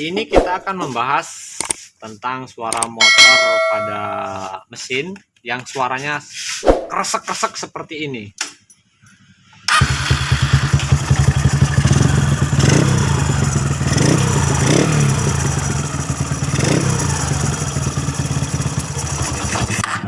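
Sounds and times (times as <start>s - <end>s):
motorcycle engine rattling: 9.7s - 19.9s.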